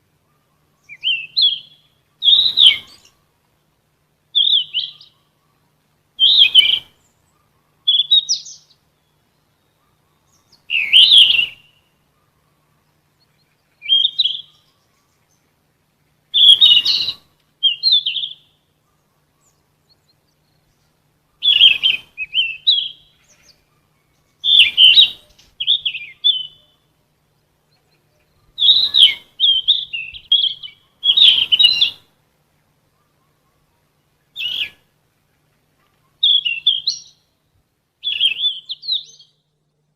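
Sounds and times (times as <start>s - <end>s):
flycatcher singing twittering phrases: 0.6s - 3.4s, 4.3s - 5.6s, 6.2s - 12.4s, 13.2s - 15.5s, 16.2s - 18.8s, 19.4s - 32.1s, 36.1s - 37.4s, 38.0s - 39.6s.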